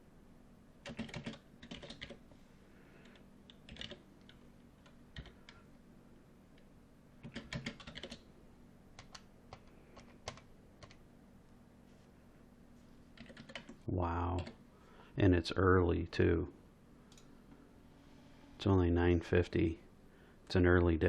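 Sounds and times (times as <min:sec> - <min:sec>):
low steady hum: 0:00.0 - 0:21.0
keyboard typing: 0:00.8 - 0:02.2, 0:03.1 - 0:05.6, 0:07.2 - 0:08.3, 0:09.0 - 0:11.0, 0:13.2 - 0:13.8.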